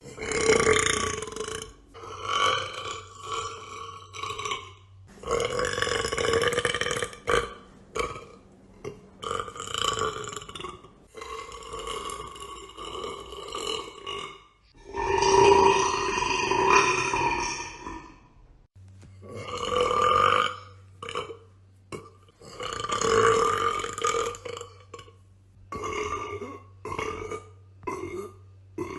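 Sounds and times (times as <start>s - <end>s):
woman belching: 0.0s - 18.2s, 25.7s - 28.9s.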